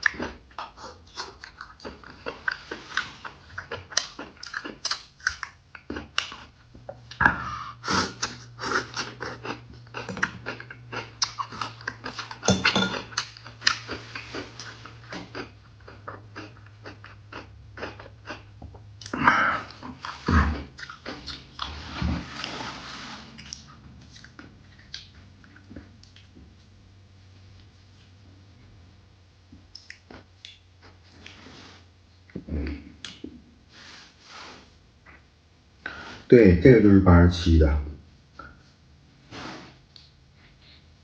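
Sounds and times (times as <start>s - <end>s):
wet chewing and smacking: 0.0s - 22.6s, 23.4s - 26.5s, 29.6s - 31.4s
faint low hum: 0.0s - 41.0s.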